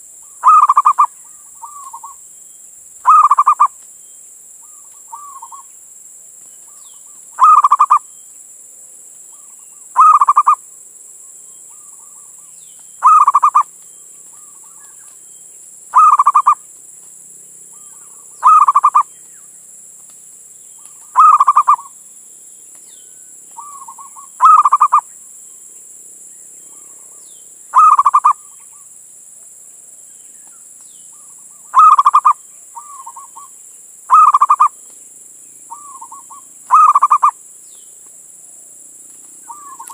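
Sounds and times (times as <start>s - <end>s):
steady high hiss: 0.0s - 39.9s
dove cooing song: 0.4s - 2.2s, 3.1s - 3.8s, 4.6s - 5.7s, 6.7s - 8.0s, 9.4s - 10.6s, 11.7s - 13.7s, 16.0s - 16.6s, 17.7s - 19.1s, 20.9s - 22.0s, 23.6s - 25.1s, 26.7s - 28.8s, 31.1s - 33.5s, 34.1s - 34.8s, 35.7s - 37.4s, 39.4s - 39.9s.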